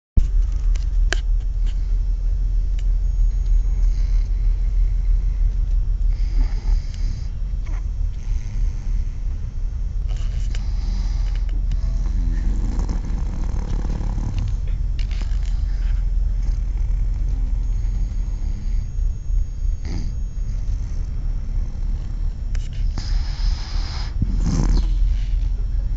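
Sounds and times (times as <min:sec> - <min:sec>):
steady low rumble: 0:00.2 - 0:25.9
person snoring: 0:08.2 - 0:09.3, 0:10.1 - 0:14.6, 0:19.8 - 0:25.5.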